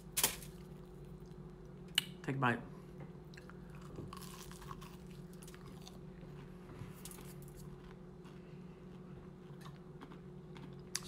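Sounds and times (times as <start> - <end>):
person chewing crunchy food: 3.2 - 11.0.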